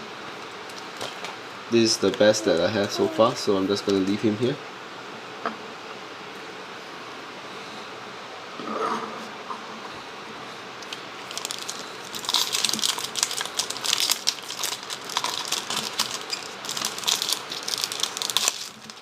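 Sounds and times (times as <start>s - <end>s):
wrapper crinkling and tearing: 11.2s - 19.0s.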